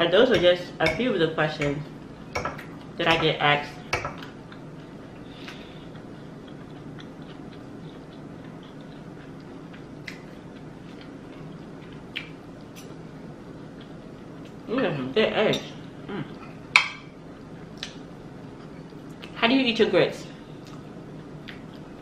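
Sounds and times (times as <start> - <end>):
low background hum: 0.0 - 22.0
person chewing food: 4.2 - 14.6, 20.6 - 22.0.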